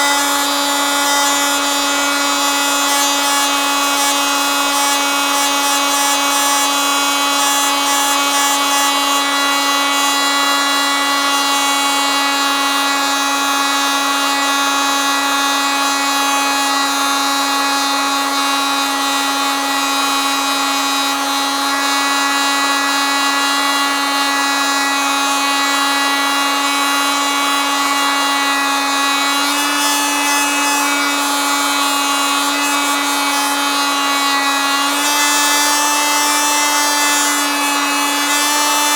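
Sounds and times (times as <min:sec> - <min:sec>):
oscillating multitool buzzing: 0:00.0 - 0:13.8, 0:21.9 - 0:38.9.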